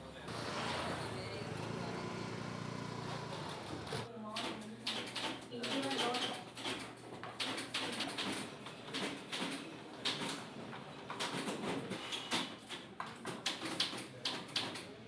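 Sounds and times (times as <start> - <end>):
typewriter keys clacking: 4.4 - 10.4, 11.1 - 14.9.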